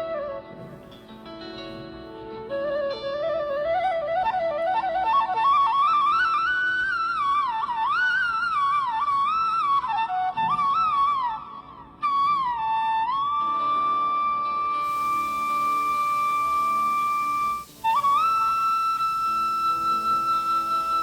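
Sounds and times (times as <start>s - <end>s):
woodwind melody: 0.0s - 21.0s
steady drone: 14.2s - 21.0s.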